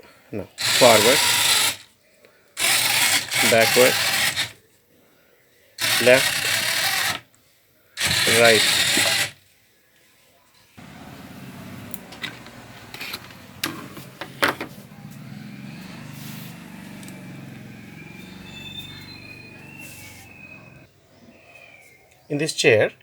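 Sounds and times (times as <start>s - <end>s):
small electric motors running: 0.6s - 1.9s, 2.6s - 4.6s, 5.8s - 7.2s, 8.0s - 9.4s, 15.1s - 20.9s.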